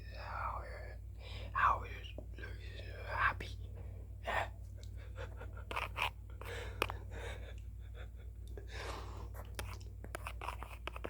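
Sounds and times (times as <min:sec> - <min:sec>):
soft whispering: 0:00.0 - 0:04.7
steady low hum: 0:00.0 - 0:11.0.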